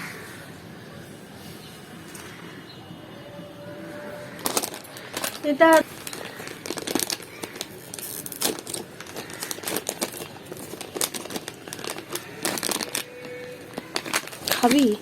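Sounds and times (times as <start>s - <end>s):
plastic wrappers crinkling: 4.3s - 15.0s.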